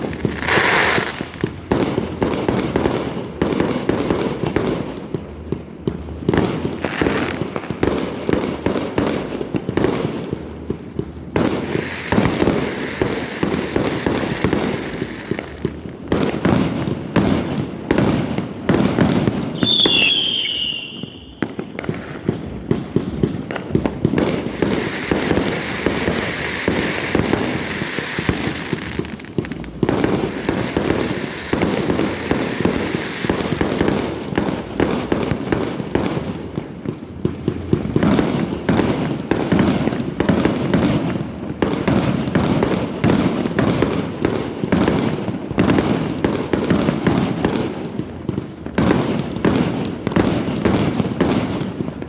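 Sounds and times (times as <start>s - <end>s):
whistling firework: 0.0s - 2.9s, 11.4s - 36.2s
firecrackers crackling and banging: 0.0s - 52.0s.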